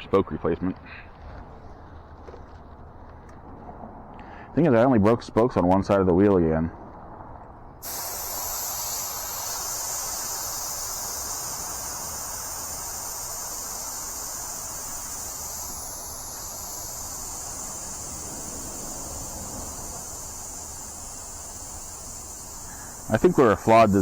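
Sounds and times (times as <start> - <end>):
air hissing from tire valve: 7.8 - 24.0.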